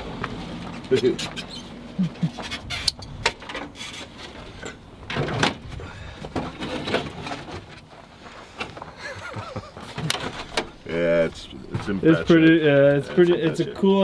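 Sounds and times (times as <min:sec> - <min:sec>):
rustling: 0:00.3 - 0:13.6
objects knocking and clattering: 0:02.3 - 0:07.9, 0:08.6 - 0:12.4.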